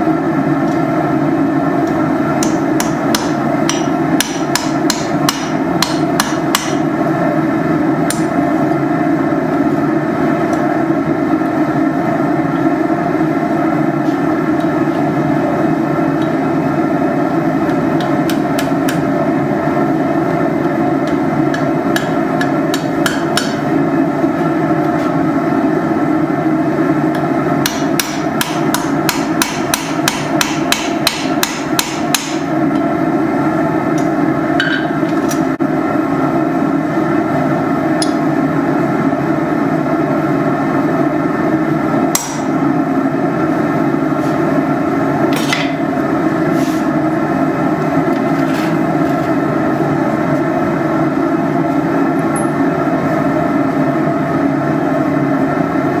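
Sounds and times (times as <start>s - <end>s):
steady continuous roar: 0.0s - 56.0s
hammer striking iron on anvil: 2.4s - 6.9s, 21.0s - 23.7s, 27.6s - 32.5s, 34.0s - 35.0s, 42.1s - 42.5s.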